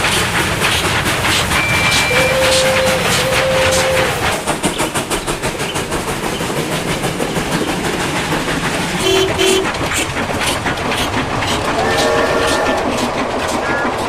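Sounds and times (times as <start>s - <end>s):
steam locomotive chuffing: 0.0s - 14.0s
wheels clattering on rail joints: 0.0s - 14.0s
held tone: 1.5s - 3.7s
train whistle toots: 1.5s - 4.2s, 9.0s - 9.7s, 11.8s - 12.9s.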